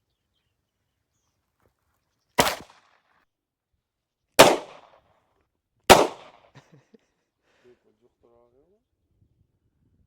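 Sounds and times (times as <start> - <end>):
gunshots: 2.4 - 2.8, 4.4 - 4.9, 5.9 - 6.4.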